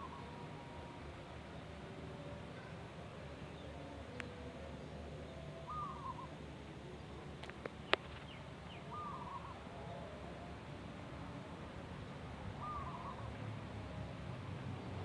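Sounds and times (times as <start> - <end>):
dove cooing: 5.7 - 6.3, 12.6 - 13.2.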